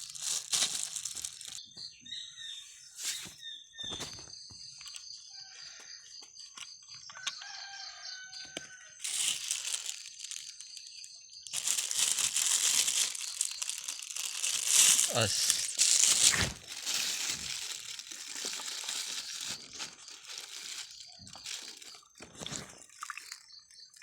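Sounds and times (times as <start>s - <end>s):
rustling crinkling handling noise: 0.0s - 1.6s, 9.0s - 23.4s.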